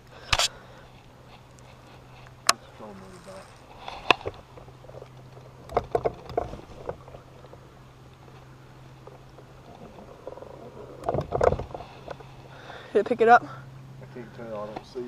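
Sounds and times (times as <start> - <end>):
electric motor humming: 2.5 - 4.4.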